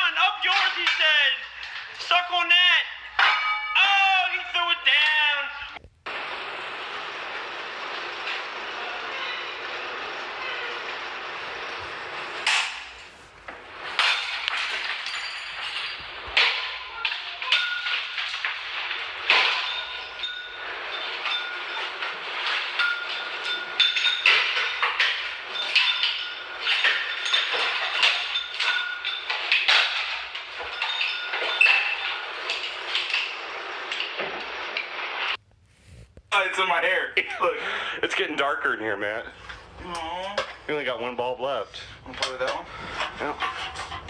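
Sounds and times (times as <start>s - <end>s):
glass breaking: 0.0s - 5.2s, 6.1s - 35.4s
hard hits and clattering: 3.0s - 4.1s, 10.0s - 35.4s, 41.8s - 44.0s
metallic ringing: 3.0s - 4.1s, 11.4s - 33.4s.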